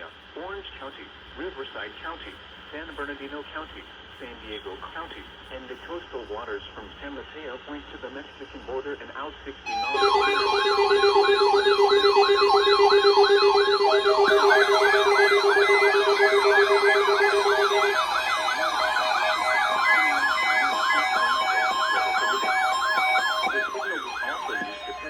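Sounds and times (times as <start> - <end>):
steady beeping tones: 9.7 - 25.0
wailing electronic siren: 9.7 - 25.0.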